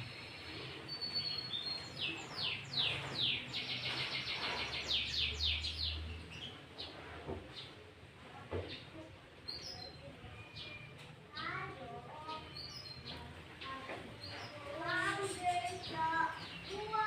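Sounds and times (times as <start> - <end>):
bird singing: 0.0 - 6.9, 12.2 - 17.0.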